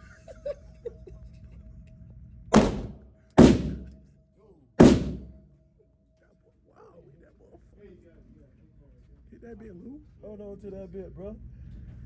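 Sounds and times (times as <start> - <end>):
pistol shots: 2.5 - 4.0, 4.8 - 5.4.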